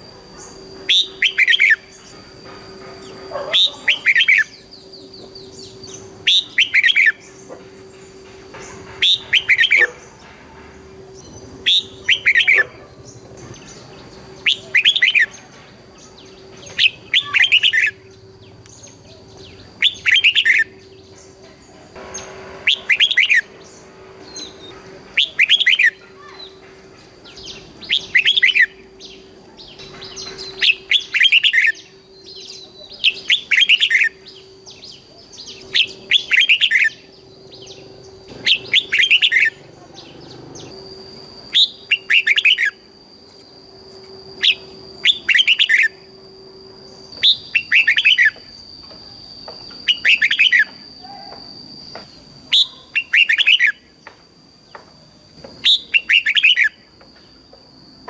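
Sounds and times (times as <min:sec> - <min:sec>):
faint steady hum: 0:00.0 - 0:58.0
bird warbling song: 0:00.4 - 0:10.3, 0:11.1 - 0:42.8, 0:44.4 - 0:46.0, 0:46.9 - 0:48.4.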